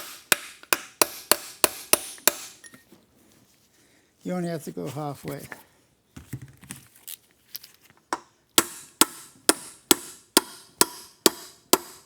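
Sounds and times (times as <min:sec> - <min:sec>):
hammer striking metal punch: 0:00.0 - 0:02.7, 0:08.6 - 0:12.0.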